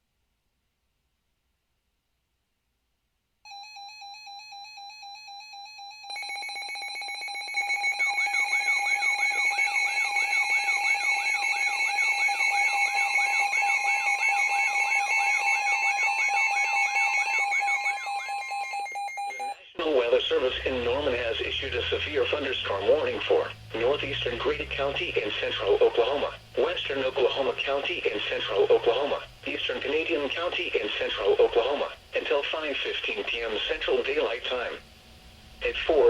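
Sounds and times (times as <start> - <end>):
steady high alarm tone: 3.5 - 34.9
warbling siren-like alarm: 5.6 - 32.1.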